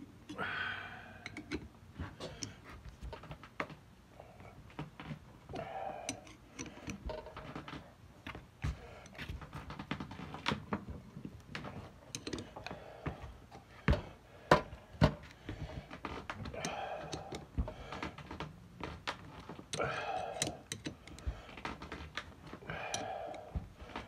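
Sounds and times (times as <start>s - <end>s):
wrench clicking on bolts: 12.1s - 12.6s, 19.7s - 21.3s.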